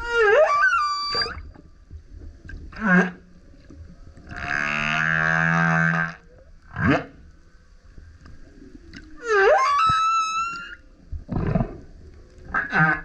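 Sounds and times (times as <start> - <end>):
humpback whale singing: 0.0 - 1.5, 9.1 - 10.9.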